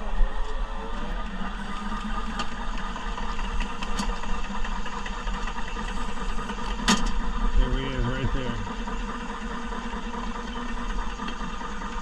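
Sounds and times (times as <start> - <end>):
drain cleaning machine humming: 0.0 - 12.0.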